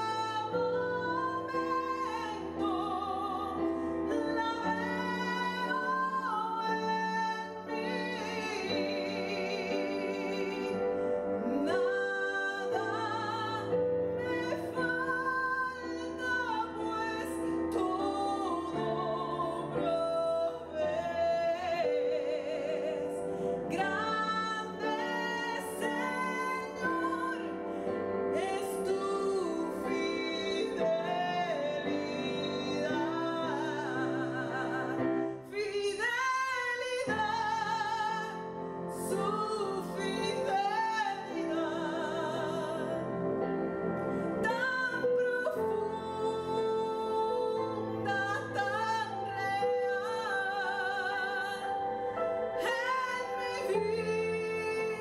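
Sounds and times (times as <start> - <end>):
woman singing worship song: 0.0 - 55.0.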